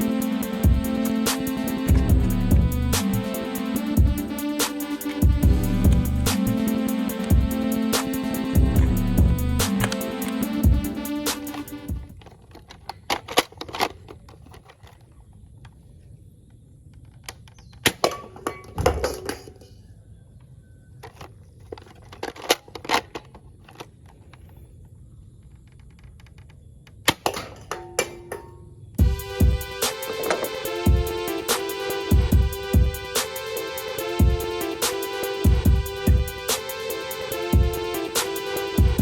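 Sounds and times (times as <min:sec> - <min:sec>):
plastic toy gun clicks: 0:11.4 - 0:15.1, 0:21.0 - 0:24.5.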